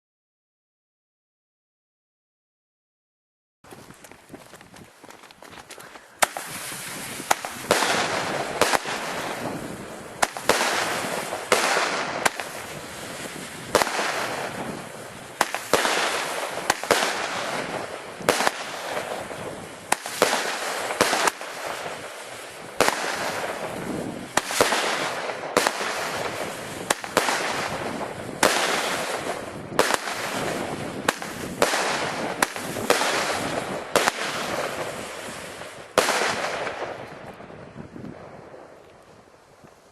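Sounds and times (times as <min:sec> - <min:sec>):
firework launch cracks: 0:06.2 - 0:37.4
dense firework crackling: 0:06.2 - 0:39.9.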